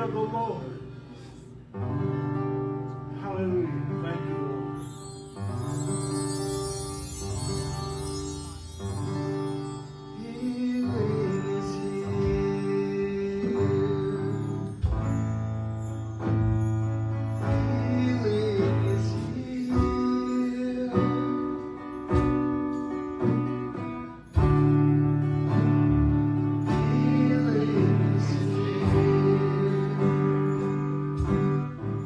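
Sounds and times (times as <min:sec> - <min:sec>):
slow instrumental worship music: 0:00.0 - 0:32.0.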